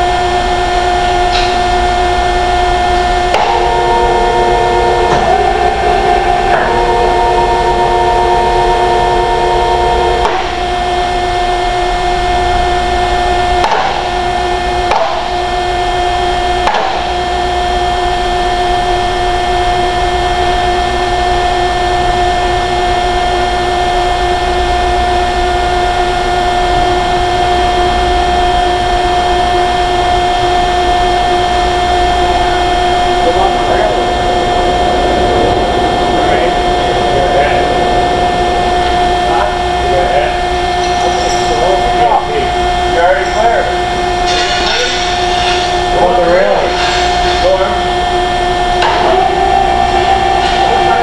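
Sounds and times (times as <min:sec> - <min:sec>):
industrial machinery droning: 0:00.0 - 0:51.0
sharp metallic knocks: 0:03.0 - 0:03.9, 0:10.2 - 0:10.7, 0:13.6 - 0:15.5, 0:16.6 - 0:17.3.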